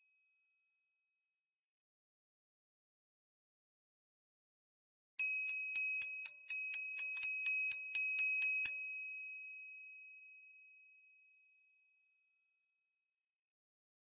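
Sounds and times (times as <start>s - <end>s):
small brass bell ringing: 5.2s - 10.6s.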